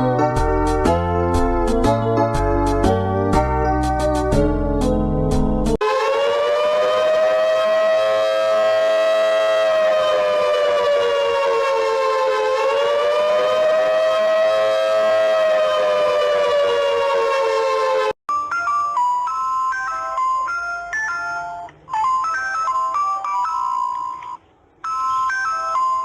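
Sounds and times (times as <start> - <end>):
keyboard music: 0.0 - 26.0
warning siren wailing: 5.8 - 18.2.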